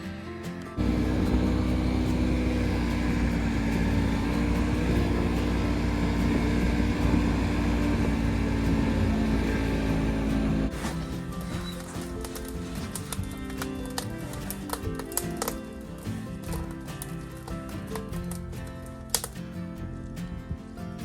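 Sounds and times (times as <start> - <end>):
snowmobile engine droning: 0.8 - 13.0.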